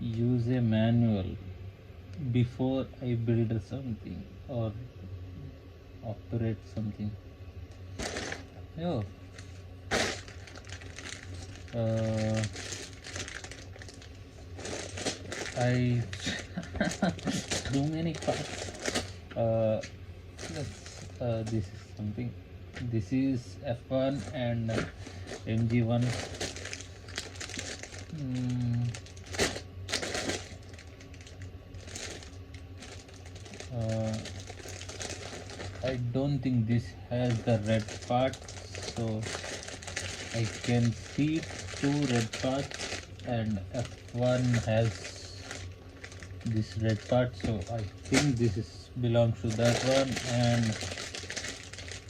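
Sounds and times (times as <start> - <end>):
plastic packaging crinkling: 7.8 - 8.5, 9.3 - 21.7, 24.1 - 36.5, 37.2 - 52.0.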